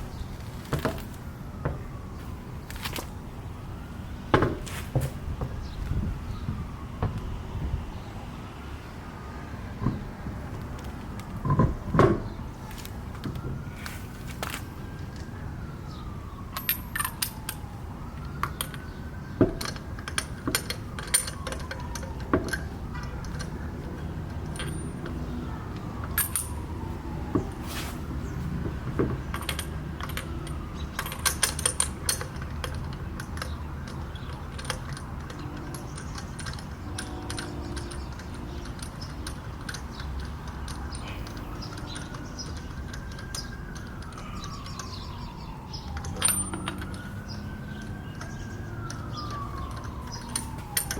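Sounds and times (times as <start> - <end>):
siren wailing: 0.3 - 50.9
metal tools clinking: 24.3 - 25.2, 26.1 - 26.6, 29.2 - 45.1, 45.9 - 50.9.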